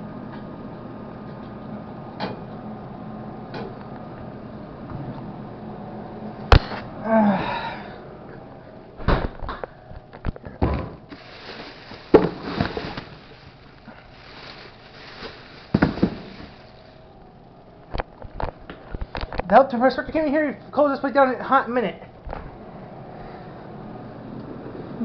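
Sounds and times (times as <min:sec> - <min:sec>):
food containers clattering: 0:10.4 - 0:13.6
plastic rustling: 0:11.1 - 0:17.0.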